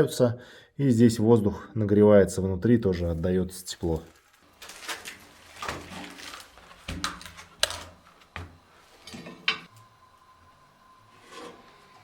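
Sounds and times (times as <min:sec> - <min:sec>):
faint high whine: 0:08.3 - 0:12.0.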